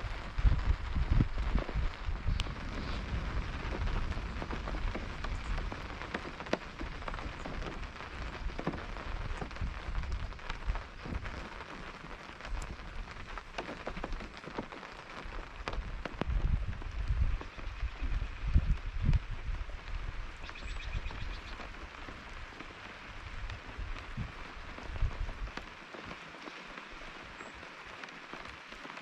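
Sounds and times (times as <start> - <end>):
low rumble: 0.0 - 8.2
rain pattering on tent fabric: 0.0 - 29.0.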